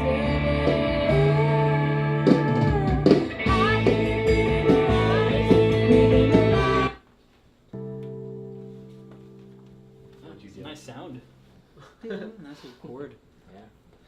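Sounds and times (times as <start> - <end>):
band playing guitar: 0.0 - 7.0
person singing: 0.0 - 7.0.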